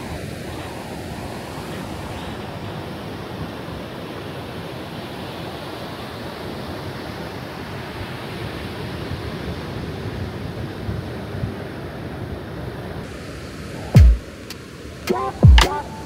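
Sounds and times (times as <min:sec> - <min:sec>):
ocean surf on a beach: 0:00.0 - 0:16.0.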